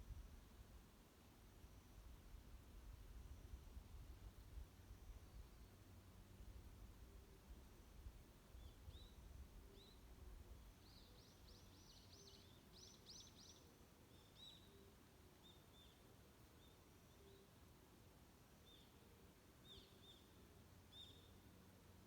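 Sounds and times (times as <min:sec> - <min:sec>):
songbird calls: 0:08.6 - 0:17.6, 0:19.6 - 0:21.4.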